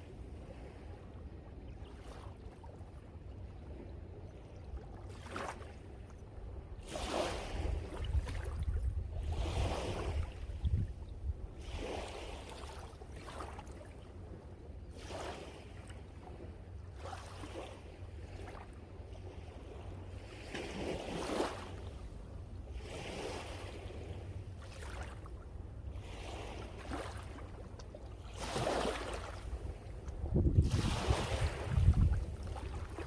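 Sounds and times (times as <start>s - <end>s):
wind rumble on microphone: 6.3s - 13.3s, 28.5s - 33.0s
sea waves washing in: 28.2s - 33.0s.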